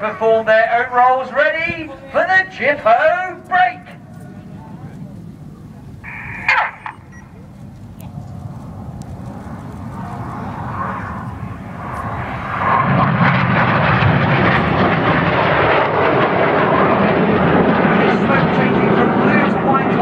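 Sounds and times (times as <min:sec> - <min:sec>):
jet engines roaring: 0:00.0 - 0:20.0.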